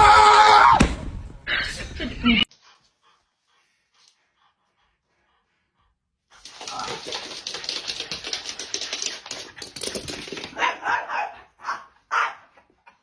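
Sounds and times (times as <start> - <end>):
fast sharp clicks: 6.4 - 10.5
dog barking: 10.6 - 12.5.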